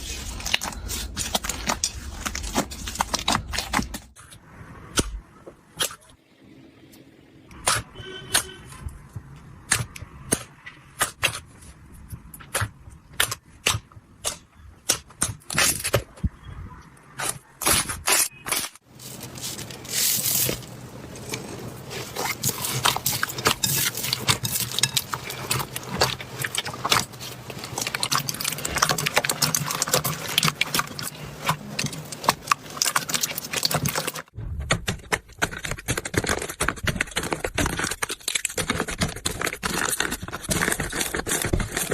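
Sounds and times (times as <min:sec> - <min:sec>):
slime crackling: 0:18.9 - 0:34.4.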